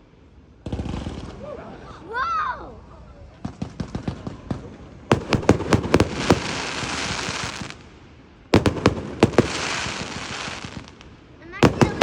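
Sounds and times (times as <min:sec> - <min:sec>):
fireworks bangs: 0:00.6 - 0:01.5, 0:03.4 - 0:12.0
fireworks hissing crackle: 0:03.4 - 0:12.0.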